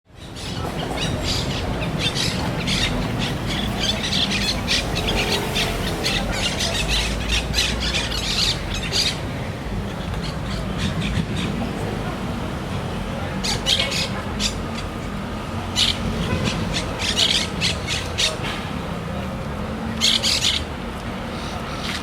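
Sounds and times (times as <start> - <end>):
city traffic rumble: 0.1 - 22.0
parrots squawking: 0.3 - 11.7, 13.4 - 15.0, 15.7 - 18.5, 20.0 - 20.7.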